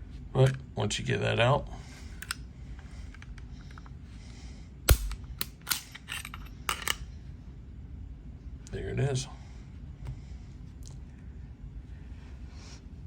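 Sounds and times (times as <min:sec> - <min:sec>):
pistol parts clicking: 0:02.2 - 0:02.4, 0:04.9 - 0:07.1.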